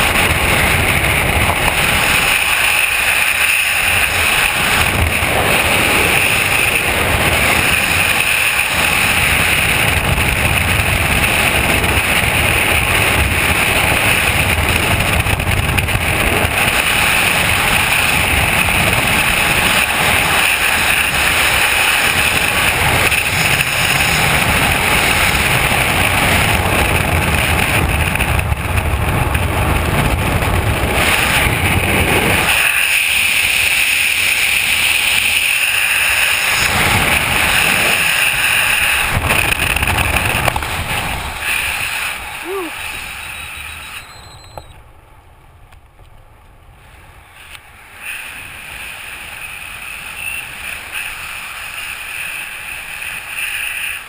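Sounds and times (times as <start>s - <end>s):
freefall wind rushing: 0.0s - 44.0s.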